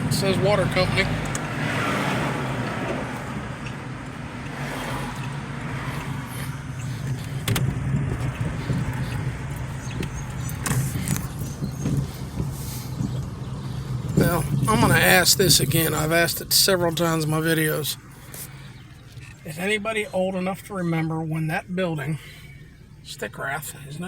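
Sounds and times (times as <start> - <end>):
car engine and road hum: 0.0 - 24.0.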